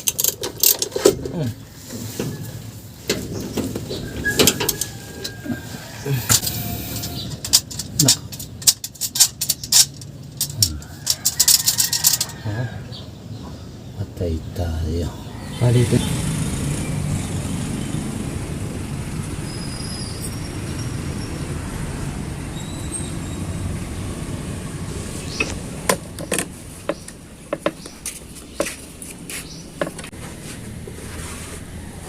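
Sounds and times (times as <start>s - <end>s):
tools clanking on metal: 0.0s - 5.6s, 6.3s - 12.4s, 29.8s - 30.2s
vehicle engine rumble: 0.0s - 32.0s.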